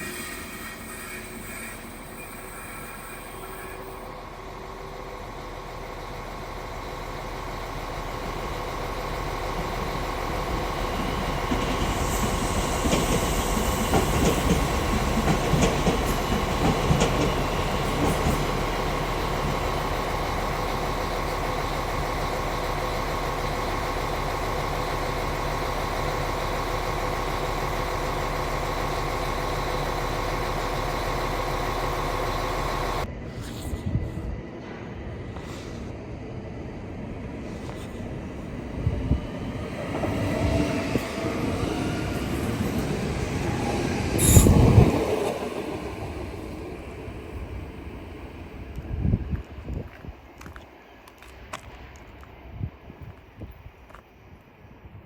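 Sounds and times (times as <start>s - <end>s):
train arriving: 0.0s - 55.0s
wheels clattering over rails: 7.6s - 33.1s.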